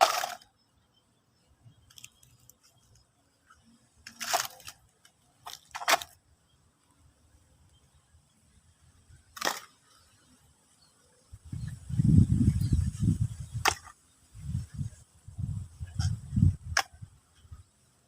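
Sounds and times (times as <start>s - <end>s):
toy cars clattering: 0.0s - 0.5s, 4.0s - 6.2s.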